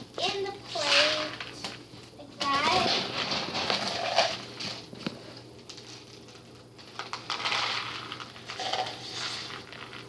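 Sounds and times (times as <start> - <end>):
pet food pellets rattling onto plate: 2.7 - 4.8, 5.6 - 10.0.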